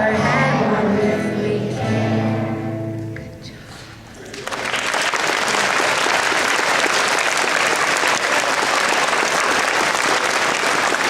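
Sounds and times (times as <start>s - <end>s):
audience applauding: 4.1s - 11.0s.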